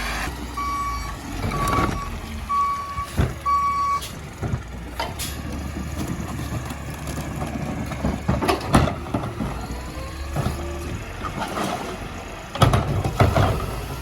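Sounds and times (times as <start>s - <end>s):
truck backup alarm beeping: 0.0s - 4.2s
truck engine running: 0.0s - 14.0s.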